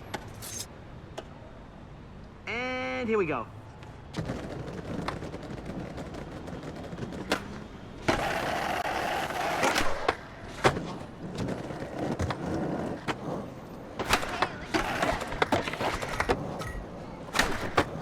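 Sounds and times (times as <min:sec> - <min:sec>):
skateboard wheels rolling: 0:03.6 - 0:18.0
skateboard grinding: 0:04.2 - 0:18.0.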